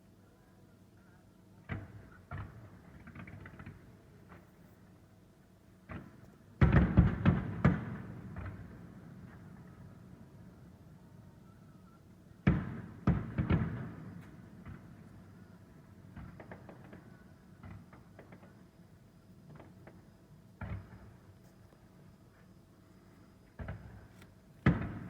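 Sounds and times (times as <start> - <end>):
firework pops and crackles: 1.6 - 4.6, 5.8 - 9.8, 12.4 - 15.1, 16.1 - 18.8, 19.5 - 21.3, 23.6 - 25.0
fireworks bangs: 5.9 - 9.4, 12.4 - 15.1, 19.5 - 21.3, 23.6 - 25.0.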